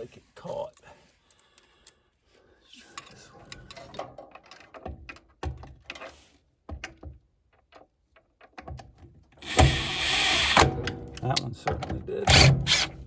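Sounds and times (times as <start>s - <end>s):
screws and hand tools clicking: 12.3s - 13.0s.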